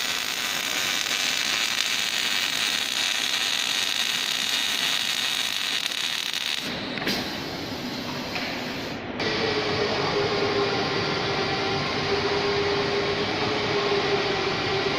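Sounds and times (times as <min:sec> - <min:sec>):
welding machine mechanical noise: 0:00.0 - 0:09.0.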